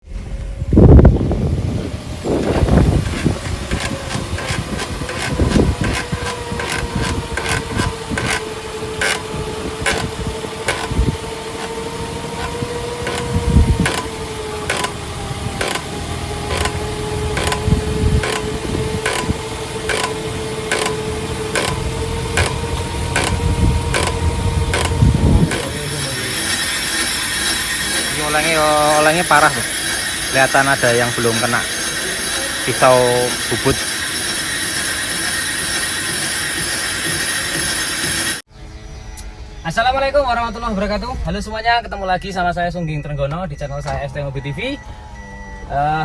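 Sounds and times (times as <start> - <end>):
brake lathe motor whine: 0.0 - 41.3, 43.8 - 46.0
cutting tool ticking: 2.4 - 38.4.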